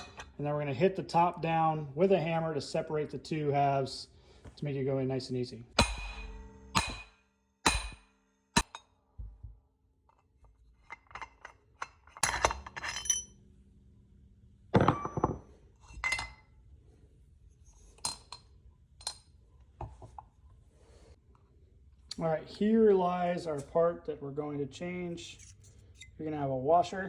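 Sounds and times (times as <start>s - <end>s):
hammer striking metal: 5.8s - 8.9s
metal parts clinking: 10.8s - 13.4s.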